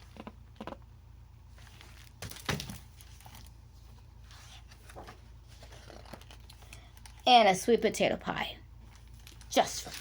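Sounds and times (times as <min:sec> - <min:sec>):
paper pages rustling: 0:01.6 - 0:07.2, 0:08.9 - 0:10.0.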